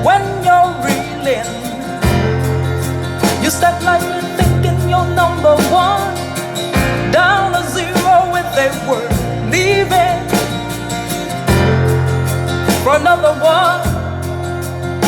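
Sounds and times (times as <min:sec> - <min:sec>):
sustained bass notes: 0:00.0 - 0:15.0.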